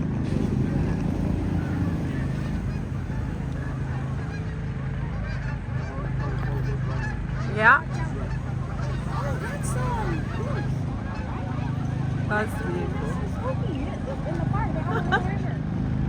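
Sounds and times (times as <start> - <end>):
steady low hum: 0.0 - 15.4
goose honk: 0.3 - 13.7.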